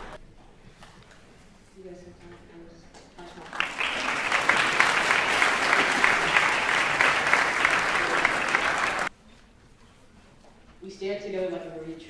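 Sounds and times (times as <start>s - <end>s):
audience applauding and cheering: 3.4s - 9.1s.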